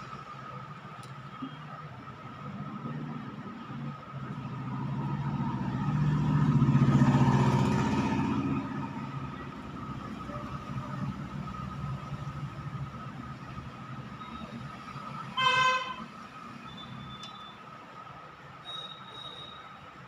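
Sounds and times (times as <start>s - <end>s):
vehicle engine passing by: 4.2s - 12.6s.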